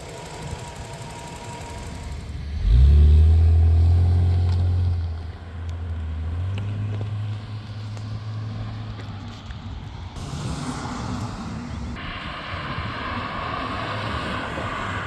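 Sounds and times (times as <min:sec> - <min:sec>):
car engine revving: 0:00.0 - 0:07.4.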